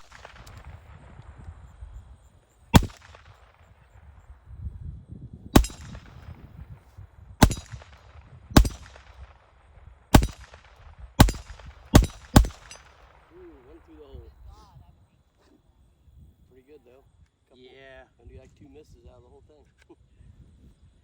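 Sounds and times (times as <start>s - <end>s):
handgun shots: 0.0s - 0.6s, 2.8s - 3.3s, 5.6s - 6.2s, 7.4s - 8.0s, 8.6s - 9.0s, 10.2s - 10.6s, 11.2s - 13.0s.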